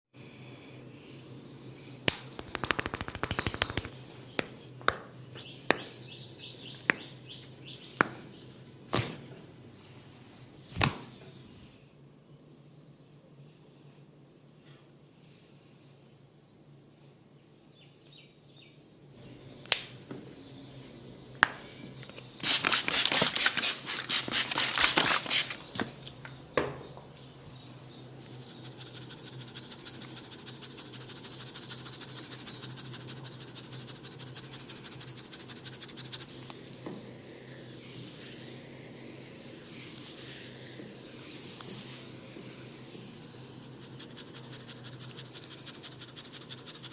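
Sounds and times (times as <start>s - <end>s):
sharp clicks: 2.1s - 3.9s
fingers scratching through hair: 2.3s - 3.9s, 28.2s - 36.4s, 43.4s - 46.9s
rapid strokes on the head: 2.4s - 3.9s, 28.2s - 36.4s, 41.2s - 46.9s.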